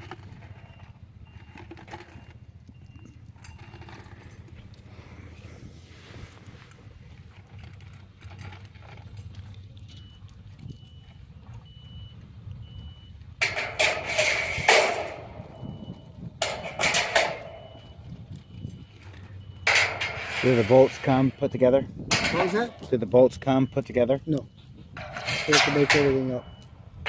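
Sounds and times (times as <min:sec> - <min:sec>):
metal hardware clattering: 0:13.4 - 0:27.0
thin high beep: 0:14.7 - 0:26.9.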